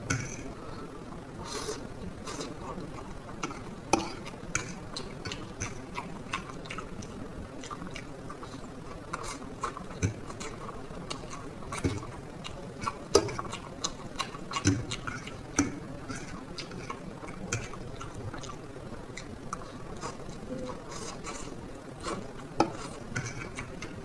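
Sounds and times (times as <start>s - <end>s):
person chewing noodles: 1.4s - 24.0s.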